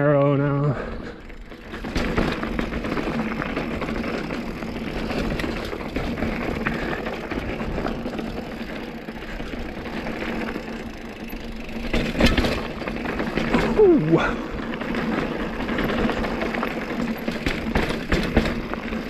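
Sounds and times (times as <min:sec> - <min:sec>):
bike tyres on rocky trail: 0:00.0 - 0:19.0
bike rattling and knocking: 0:00.6 - 0:19.0.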